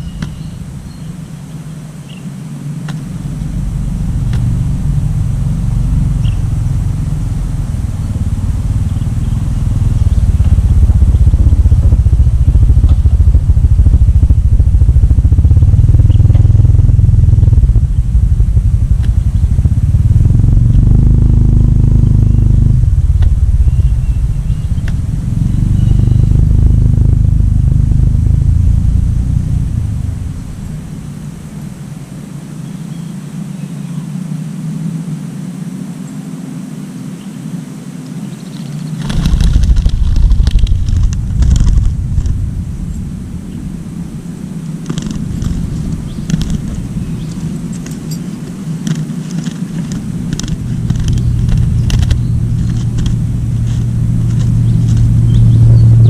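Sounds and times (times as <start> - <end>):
faint high chirps: 0.0 - 2.4, 6.1 - 6.6, 23.5 - 26.7
vehicle engine rumbling: 0.0 - 56.0.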